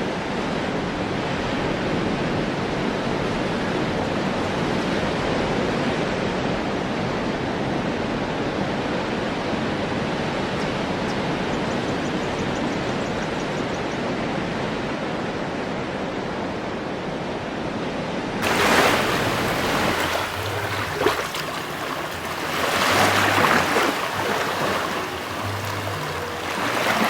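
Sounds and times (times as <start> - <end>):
ocean surf rushing: 18.4 - 27.0
waves breaking: 18.4 - 27.0.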